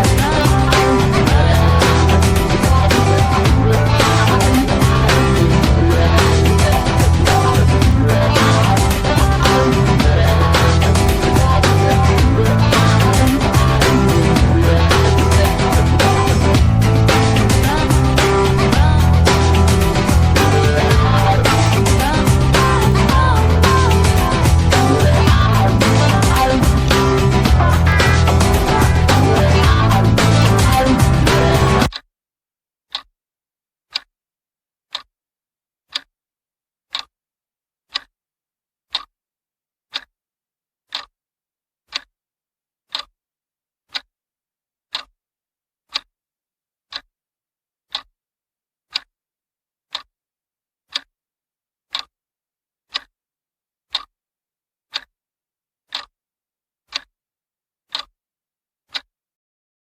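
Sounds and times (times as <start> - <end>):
clock ticking: 0.0 - 32.1, 36.9 - 37.1, 37.9 - 38.1, 38.9 - 39.1, 40.9 - 41.1, 41.9 - 42.1, 42.9 - 43.1, 44.9 - 45.1, 51.9 - 52.1, 52.9 - 53.1, 53.9 - 54.1, 54.9 - 55.1, 55.9 - 56.1, 56.9 - 57.1, 57.9 - 58.1.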